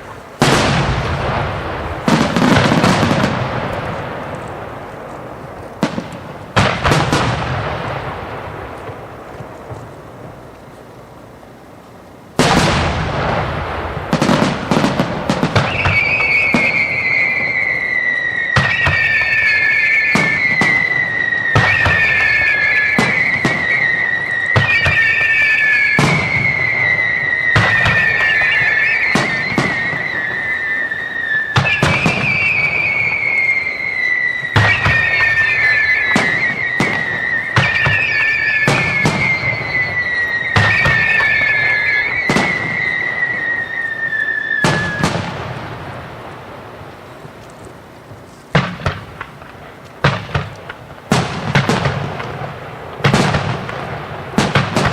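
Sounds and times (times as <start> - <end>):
fireworks bangs: 0.0 - 54.9
falling whistling tone: 15.6 - 45.2.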